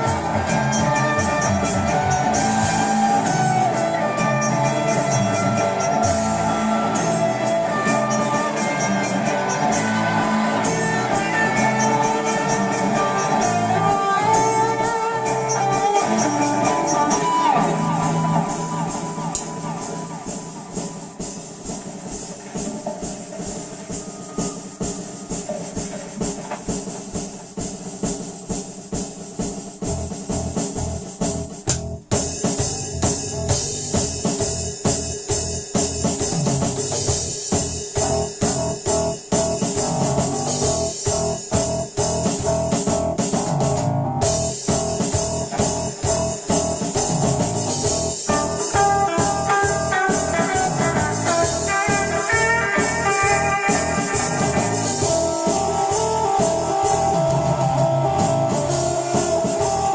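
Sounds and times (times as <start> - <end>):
band playing a song: 0.0 - 59.9
steady drum beat: 0.0 - 59.9
high-pitched notes: 48.3 - 59.9.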